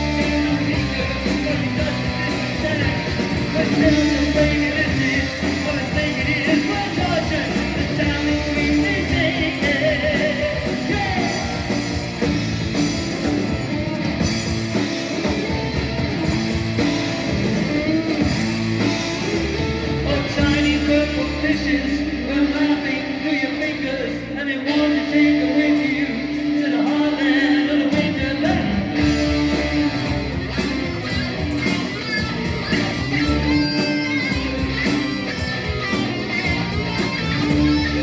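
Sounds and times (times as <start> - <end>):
lead electric guitar: 0.0 - 38.0
rock band playing: 0.0 - 38.0.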